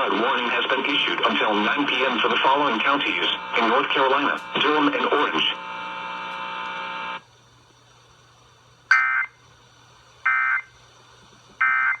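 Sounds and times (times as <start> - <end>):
steady electronic buzz: 0.0 - 7.2.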